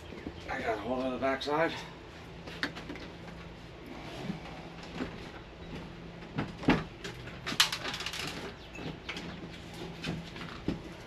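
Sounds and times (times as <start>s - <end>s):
heavy equipment knocks and bumps: 4.9s - 9.3s.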